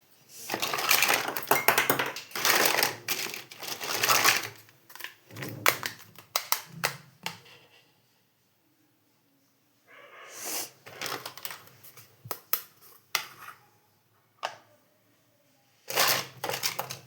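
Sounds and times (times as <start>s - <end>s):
toy pieces rustling: 0.4s - 6.7s, 10.8s - 12.0s, 15.9s - 17.0s.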